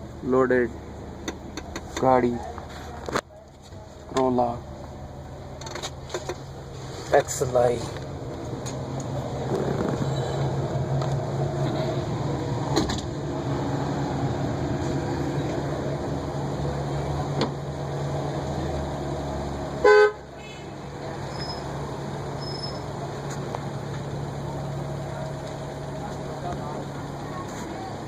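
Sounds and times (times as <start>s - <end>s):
car horn beep: 10.0s - 10.6s, 19.8s - 20.8s.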